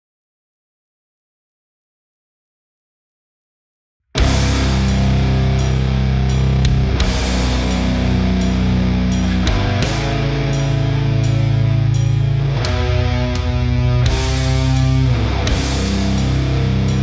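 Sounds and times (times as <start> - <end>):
drum hits: 4.2 - 5.8, 6.4 - 10.5
distorted electric guitar power chords: 4.2 - 17.0.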